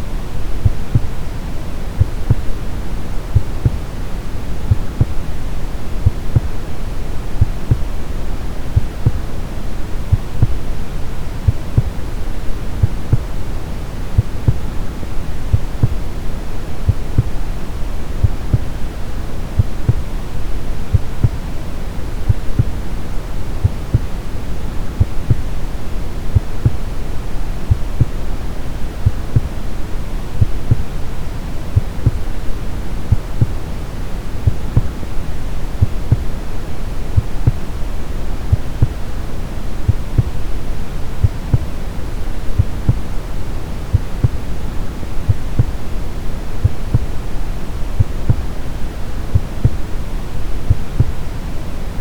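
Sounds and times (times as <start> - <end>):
heartbeat thumps: 0.6 - 1.3, 2.0 - 3.9, 4.6 - 5.3, 6.0 - 6.7, 7.3 - 9.4, 10.0 - 10.8, 11.4 - 13.4, 14.1 - 17.4, 18.1 - 18.8, 19.5 - 20.1, 20.9 - 21.5, 22.3 - 23.0, 23.6 - 24.2, 24.9 - 25.5, 26.3 - 27.0, 27.6 - 28.2, 29.0 - 29.7, 30.4 - 31.0, 31.8 - 33.6, 34.4 - 35.1, 35.8 - 36.4, 37.1 - 37.8, 38.5 - 39.1, 39.8 - 40.6, 41.2 - 43.1, 43.9 - 44.6, 45.2 - 45.9, 46.6 - 47.2, 47.9 - 48.6, 49.3 - 49.9, 50.7 - 51.2.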